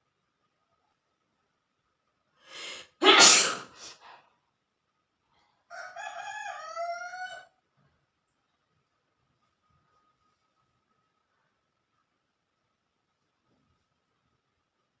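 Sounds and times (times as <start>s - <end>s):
woman sneezing: 2.6s - 4.1s
rooster crowing: 5.7s - 7.6s.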